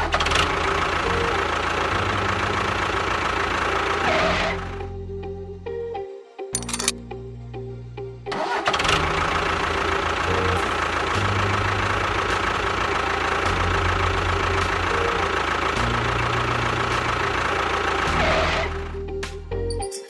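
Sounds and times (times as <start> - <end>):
background music with bass line: 9.0 - 19.9.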